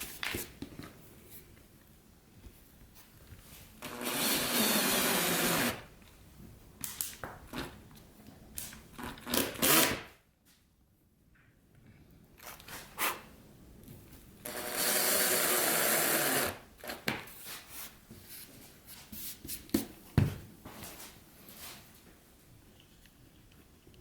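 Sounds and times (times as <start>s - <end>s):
power tool running: 3.8s - 5.8s.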